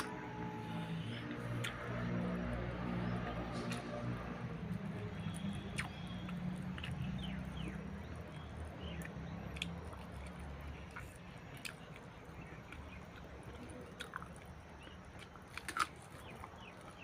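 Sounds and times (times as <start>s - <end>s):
low steady hum: 0.0s - 17.0s
person chewing food: 4.8s - 17.0s
wet mouth clicks: 5.3s - 7.0s.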